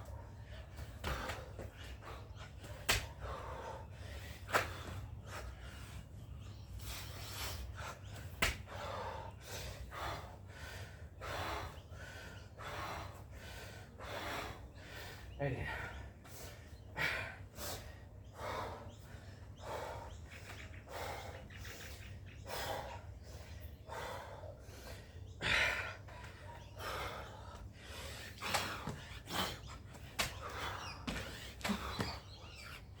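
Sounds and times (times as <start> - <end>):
person breathing hard and fast: 0.0 - 33.0.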